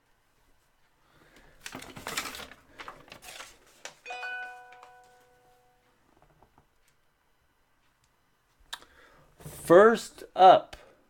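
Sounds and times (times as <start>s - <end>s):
cards and packaging rustling: 1.6s - 5.3s
bright ringing ding: 4.1s - 5.8s.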